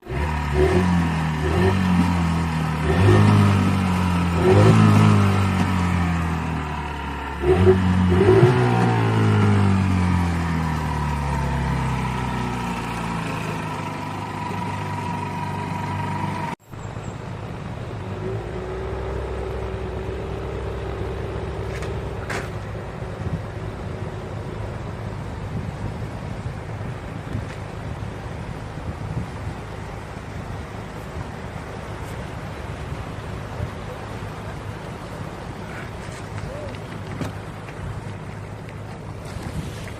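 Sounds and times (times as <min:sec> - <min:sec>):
outboard motor revving: 0:00.0 - 0:16.6, 0:17.8 - 0:23.8
wind noise: 0:21.6 - 0:39.9.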